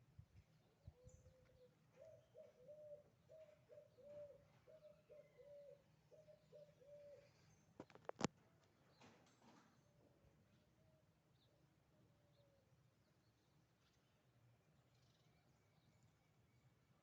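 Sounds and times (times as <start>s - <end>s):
bird cooing faintly: 0.6s - 8.2s, 10.8s - 12.8s.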